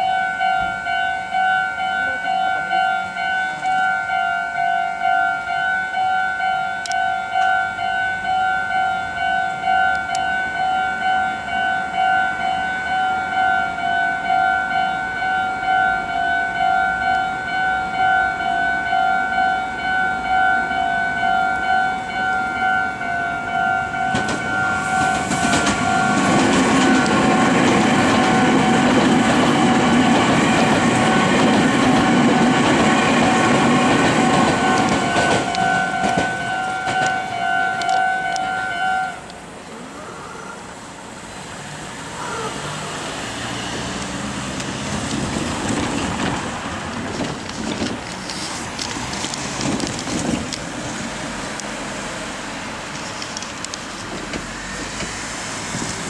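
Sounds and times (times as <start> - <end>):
level crossing warning bell: 0.0 - 40.9
electric train rumble: 0.0 - 56.0
road traffic noise: 0.0 - 56.0.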